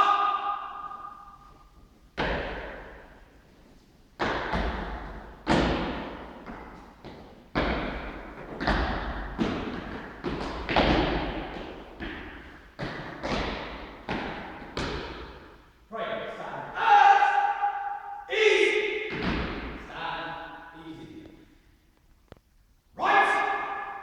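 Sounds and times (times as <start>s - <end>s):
sharp echoing thuds: 0.0s - 3.3s, 4.2s - 15.6s, 17.2s - 20.7s.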